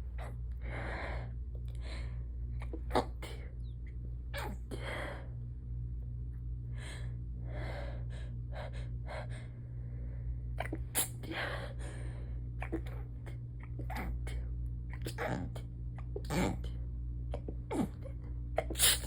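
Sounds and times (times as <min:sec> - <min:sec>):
stifled sneezes: 0:10.6 - 0:11.3, 0:18.6 - 0:19.0.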